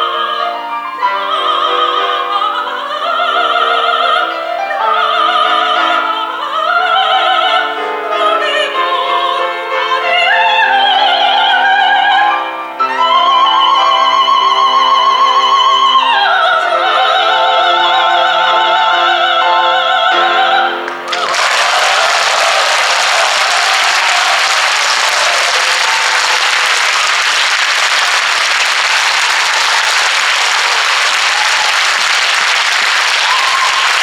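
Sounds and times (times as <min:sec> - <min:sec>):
soprano singing: 0:00.0 - 0:26.5
piano accompaniment: 0:00.0 - 0:34.0
audience applauding: 0:20.8 - 0:34.0.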